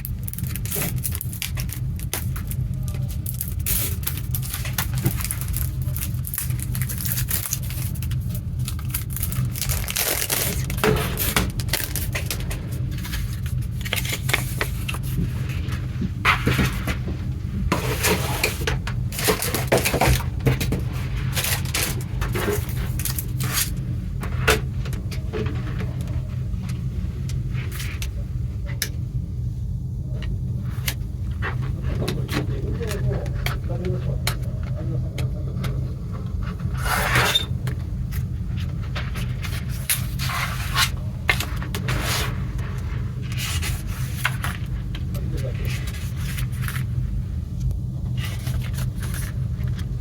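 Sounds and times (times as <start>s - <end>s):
packaging crinkling and rustling: 0.0s - 24.4s, 47.6s - 50.0s
steady low hum: 0.0s - 50.0s.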